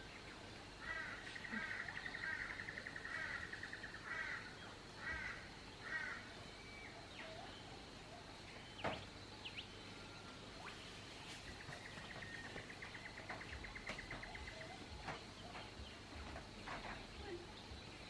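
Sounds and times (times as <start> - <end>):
steady background hiss: 0.0 - 18.0
bird calling rattling notes: 10.5 - 18.0.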